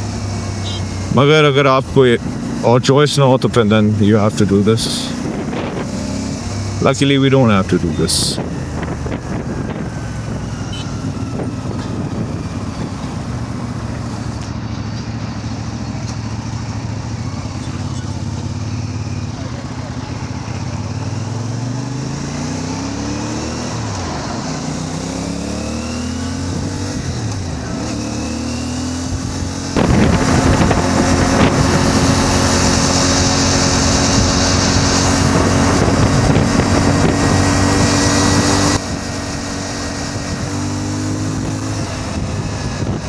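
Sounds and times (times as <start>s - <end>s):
motorcycle engine accelerating: 0.0s - 43.0s
loud rushing noise: 29.7s - 38.9s.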